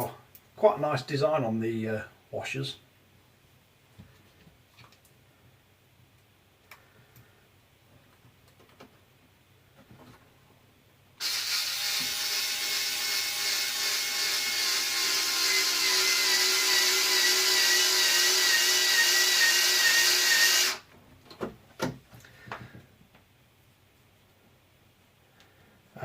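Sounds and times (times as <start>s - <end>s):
power screwdriver motor whine: 11.2s - 20.8s.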